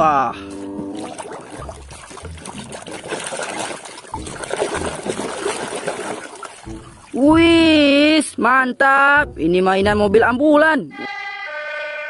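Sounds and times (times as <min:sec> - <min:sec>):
water sloshing and splashing: 0:00.0 - 0:08.3
low handling knocks: 0:06.6 - 0:07.9, 0:09.2 - 0:10.5.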